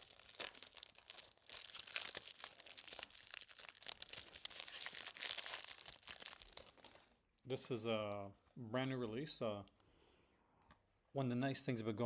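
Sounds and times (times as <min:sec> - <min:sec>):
plastic shrink-wrap crinkling: 0:00.0 - 0:07.2.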